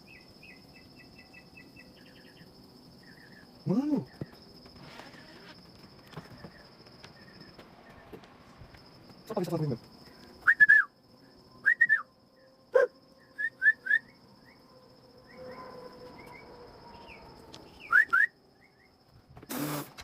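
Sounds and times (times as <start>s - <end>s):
high whistled chirps: 0.0s - 4.4s, 10.1s - 19.9s.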